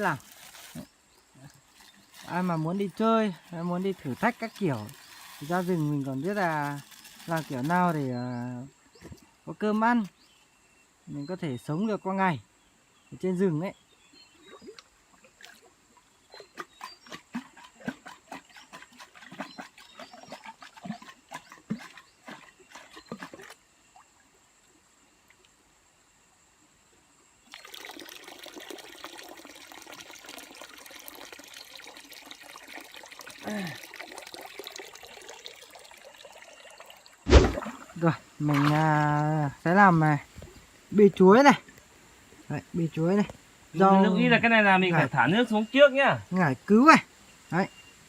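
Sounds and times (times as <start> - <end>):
small water splashes: 0.0 - 8.0, 14.2 - 24.4, 27.5 - 40.8
water trickling: 0.0 - 10.4, 27.4 - 47.7.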